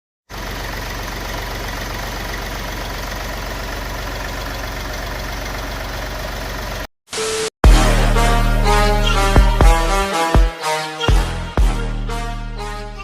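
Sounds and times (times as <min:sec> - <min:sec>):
diesel car engine idling: 0:00.3 - 0:06.9.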